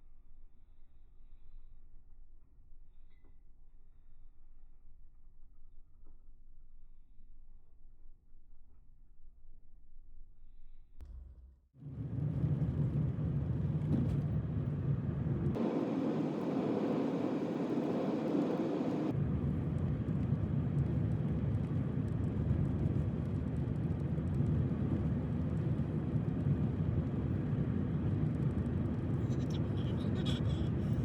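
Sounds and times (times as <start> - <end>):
engine and road rumble: 11.0 - 31.0.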